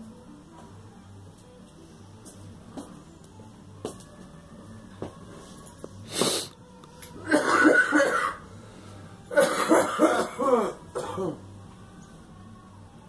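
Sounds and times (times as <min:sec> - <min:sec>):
noisy breath: 0:06.0 - 0:06.6, 0:08.4 - 0:09.3
girl coughing: 0:07.2 - 0:08.4, 0:09.3 - 0:11.4.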